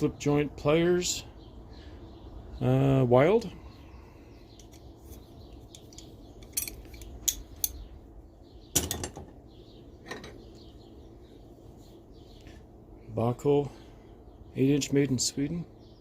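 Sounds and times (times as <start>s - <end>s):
steel tools clinking: 4.6s - 7.8s.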